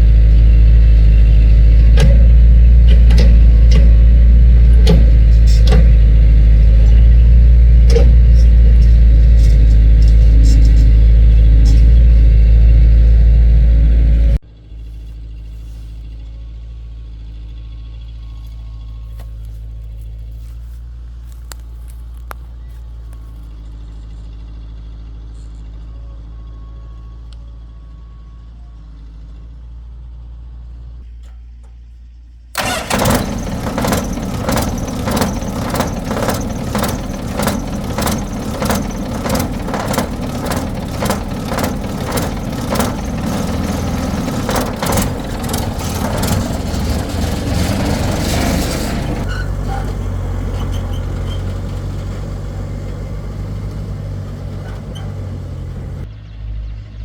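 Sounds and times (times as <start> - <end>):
engine running low: 0.0 - 57.0
loud clattering rattle: 1.0 - 12.1, 32.6 - 56.1.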